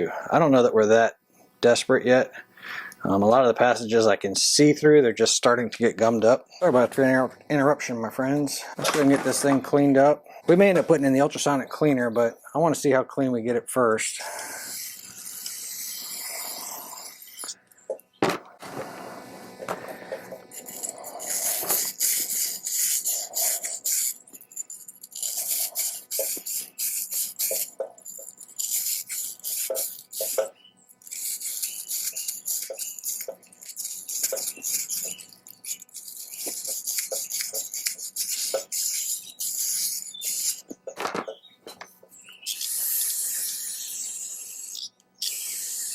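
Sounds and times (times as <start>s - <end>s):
short hissing sprays: 14.2s - 17.4s, 18.6s - 24.2s, 25.2s - 27.8s, 28.6s - 30.5s, 31.1s - 40.7s, 42.5s - 45.9s.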